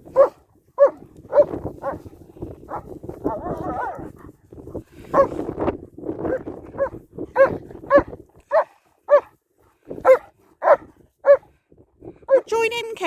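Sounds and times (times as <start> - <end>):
dog barking: 0.1 - 2.0, 2.7 - 4.1, 5.1 - 5.4, 6.3 - 9.3, 10.0 - 11.5.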